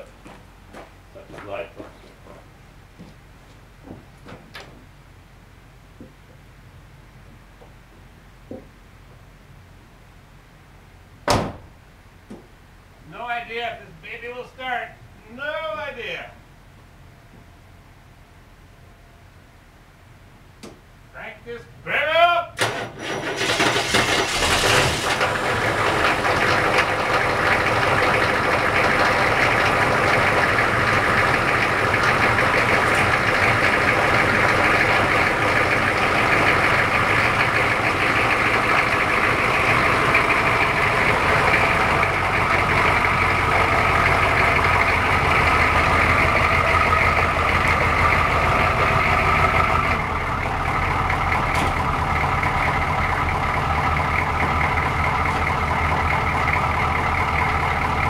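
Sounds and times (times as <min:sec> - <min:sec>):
engine idling: 0:22.6 - 0:58.0.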